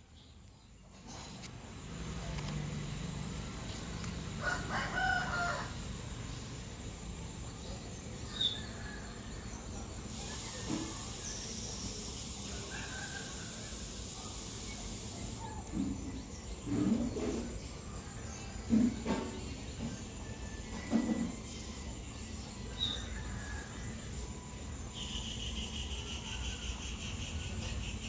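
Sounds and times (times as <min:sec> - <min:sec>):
outdoor background noise: 0:00.0 - 0:28.0
high hiss: 0:10.1 - 0:15.6.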